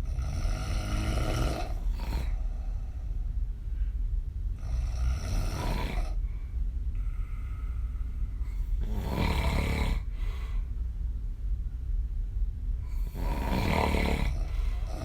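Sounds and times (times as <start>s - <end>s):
woman snoring: 0.0s - 2.7s, 4.6s - 6.2s, 8.5s - 10.1s, 12.9s - 15.0s
quiet breathing: 0.0s - 11.1s, 12.8s - 15.0s.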